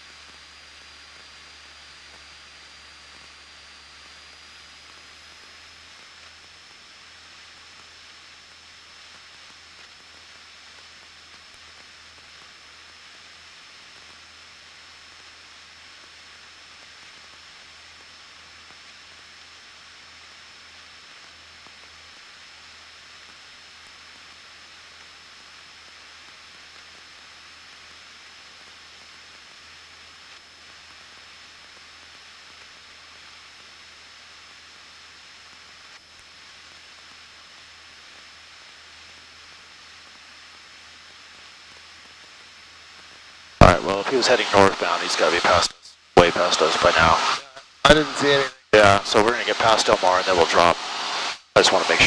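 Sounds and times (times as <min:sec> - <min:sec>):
thin high-pitched whine: 0:33.2 - 0:52.0
headset intercom hiss: 0:43.6 - 0:52.0.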